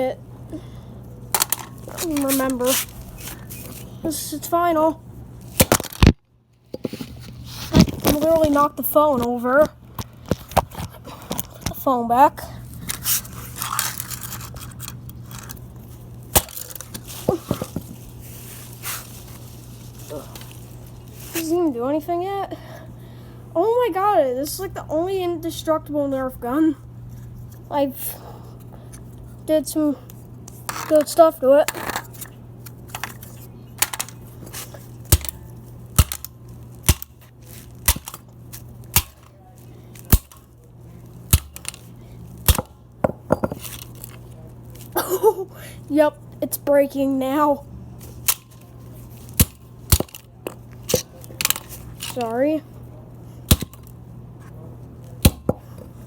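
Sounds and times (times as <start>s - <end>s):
plastic cracking: 5.5s - 6.2s, 41.3s - 42.7s.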